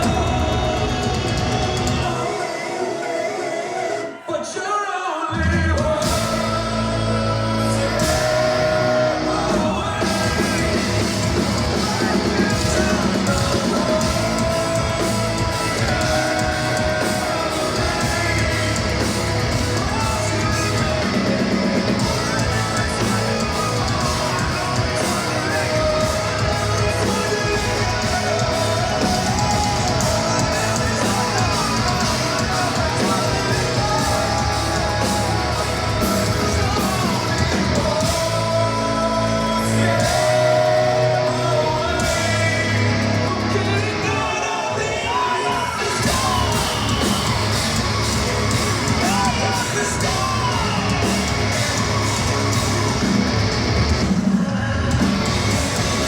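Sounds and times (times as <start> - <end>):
distorted electric guitars: 0.0 - 4.2, 5.3 - 56.0
hard rock band playing live: 0.0 - 4.6, 5.3 - 56.0
sung and shouted vocals: 0.0 - 56.0.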